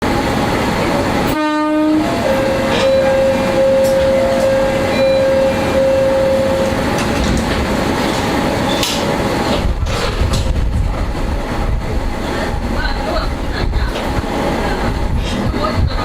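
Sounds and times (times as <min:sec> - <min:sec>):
diesel railcar rumbling: 0:00.0 - 0:16.0
short horn blast: 0:01.3 - 0:06.6
steady high tone: 0:02.0 - 0:06.8.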